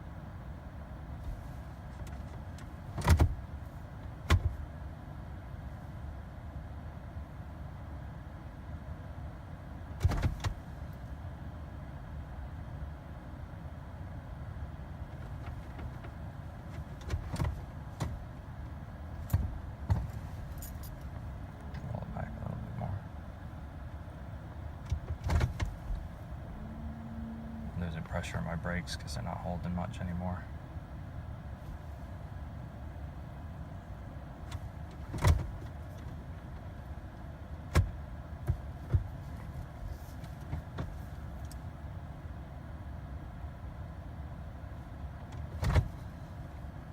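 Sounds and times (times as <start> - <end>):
vehicle rolling low rumble: 0.0 - 46.9
dull clunks and knocks: 19.2 - 21.9, 24.8 - 27.2, 37.7 - 39.6.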